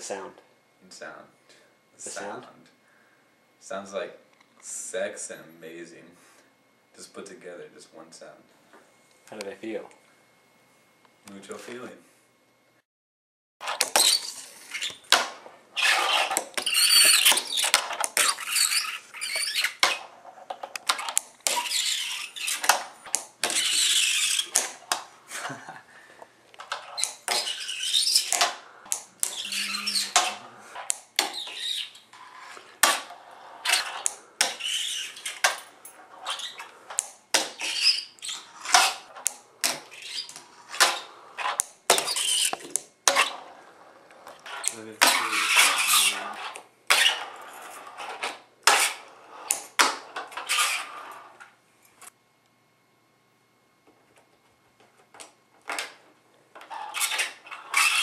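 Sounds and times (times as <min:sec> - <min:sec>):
small wheels rolling: 0:15.8 - 0:24.6, 0:26.6 - 0:51.4, 0:56.6 - 0:58.0.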